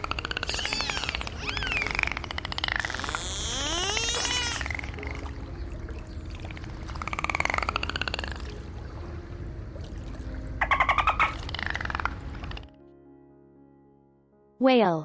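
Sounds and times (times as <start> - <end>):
dolphin pulsed buzzing calls: 0.5 - 4.9
dolphin whistle: 0.6 - 2.1, 2.8 - 4.8.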